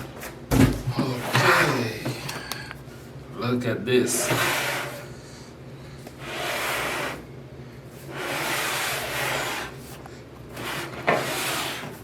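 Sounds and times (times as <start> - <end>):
cardboard scraping against cardboard: 4.1 - 5.1, 6.2 - 7.2, 8.0 - 12.0.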